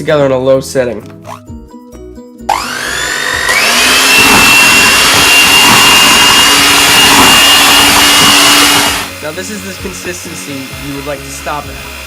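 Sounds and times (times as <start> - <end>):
electric mixer whining: 2.5 - 12.0.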